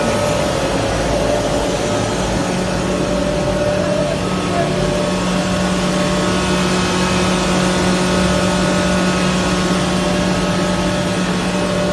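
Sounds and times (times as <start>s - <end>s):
grinding machine motor hum: 0.0s - 11.9s.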